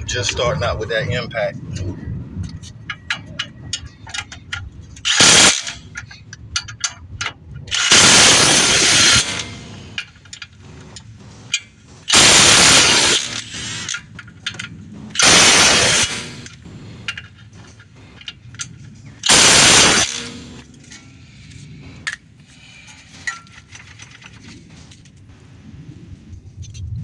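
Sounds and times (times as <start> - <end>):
tools clicking and clinking: 2.5 - 25.3
impact wrench hammering: 7.7 - 10.1, 11.5 - 20.6.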